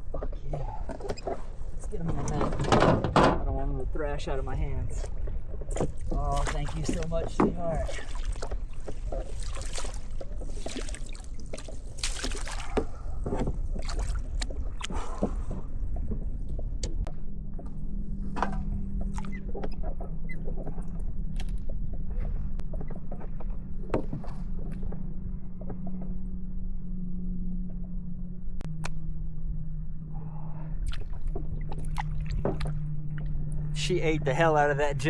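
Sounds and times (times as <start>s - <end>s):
steady low hum: 0.0s - 35.0s
wind rumble on microphone: 0.0s - 35.0s.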